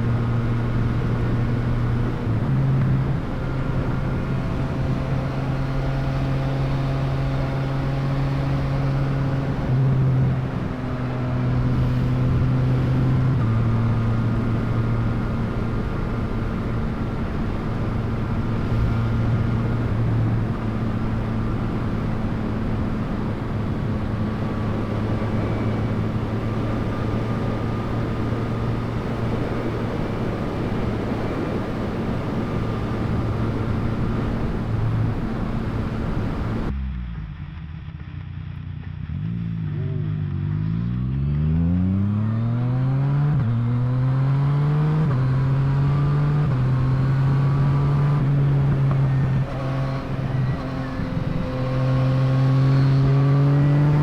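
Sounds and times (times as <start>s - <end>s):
constant rushing noise: 0.0s - 36.8s, 45.1s - 54.0s
motorcycle engine running: 0.0s - 40.6s.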